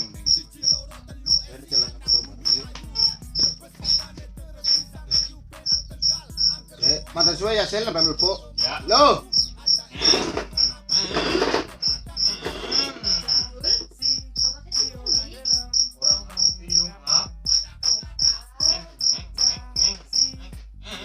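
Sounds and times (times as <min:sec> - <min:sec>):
cricket chirping: 0:08.0 - 0:20.3.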